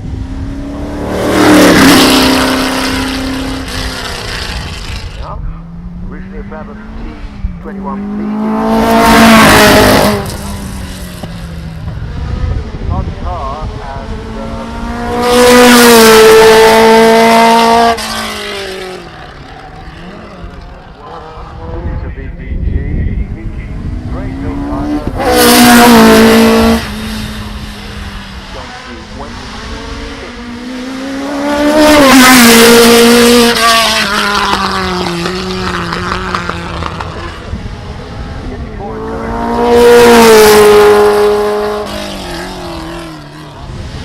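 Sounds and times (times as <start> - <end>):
racing car passing at high revs: 0.0 - 44.0.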